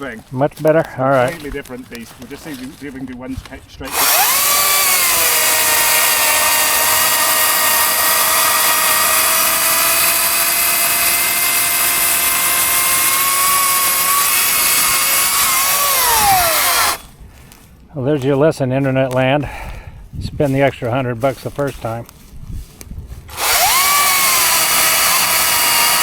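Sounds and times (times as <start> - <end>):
electric chainsaw cutting wood: 3.8 - 17.1, 23.3 - 26.0.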